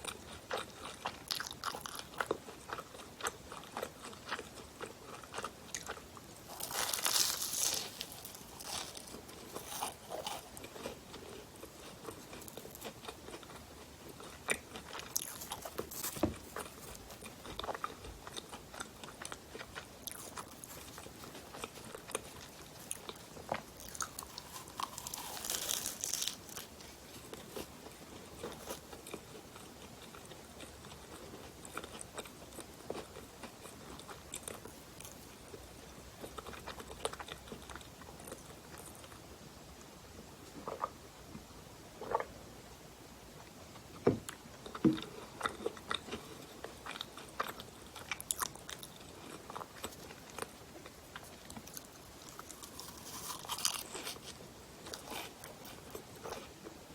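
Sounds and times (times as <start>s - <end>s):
crackling bites of crusty bread: 5.8s - 10.9s, 23.0s - 26.8s.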